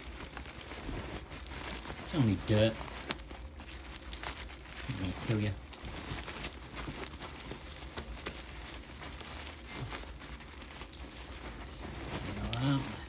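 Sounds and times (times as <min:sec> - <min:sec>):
vacuum bag crinkling: 0:00.0 - 0:13.0.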